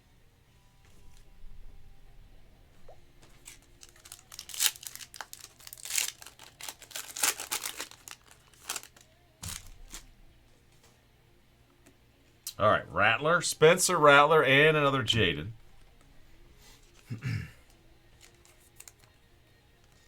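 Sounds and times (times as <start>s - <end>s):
plastic wrapper crinkling and tearing: 3.4s - 10.1s, 18.2s - 19.2s.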